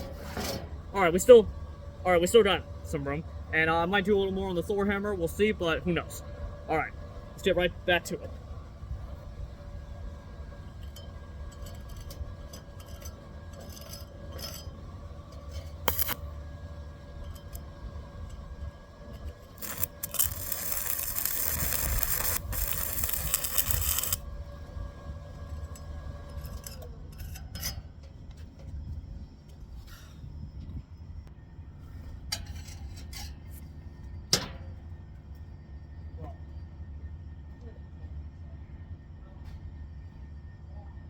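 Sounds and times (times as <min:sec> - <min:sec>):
steady hum: 0:00.0 - 0:26.8
welding arc crackling and sizzling: 0:15.8 - 0:16.4, 0:19.3 - 0:26.7.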